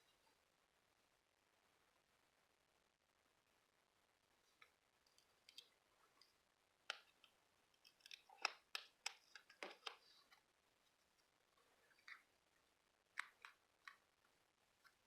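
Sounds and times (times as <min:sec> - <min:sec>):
scissors snipping paper: 0:07.8 - 0:10.0.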